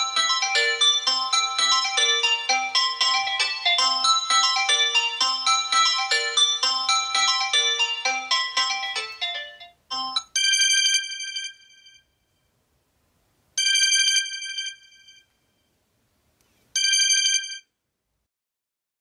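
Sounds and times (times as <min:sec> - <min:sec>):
melodic ringtone: 0:00.0 - 0:12.0, 0:13.6 - 0:15.2
bell-like phone ringtone: 0:00.0 - 0:12.2, 0:13.6 - 0:15.4, 0:16.8 - 0:17.7.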